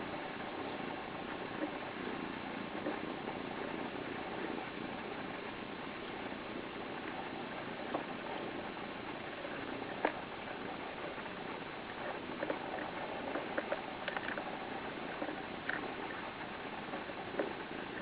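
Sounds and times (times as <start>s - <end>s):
small clicks: 12.4s - 14.5s.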